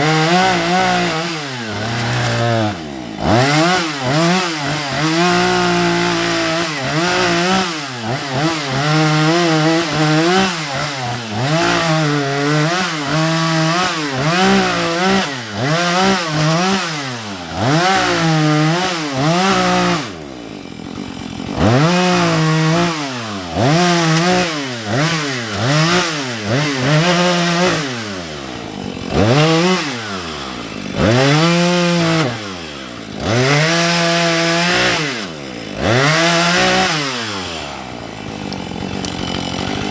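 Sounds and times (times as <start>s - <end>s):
chainsaw cutting into tree: 0.0s - 39.9s.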